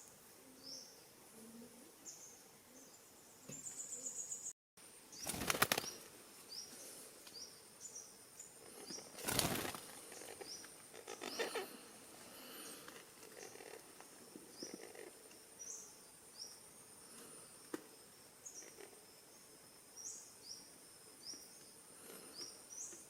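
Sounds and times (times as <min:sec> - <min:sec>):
bird wings flapping: 0:05.2 - 0:06.1, 0:09.1 - 0:10.4.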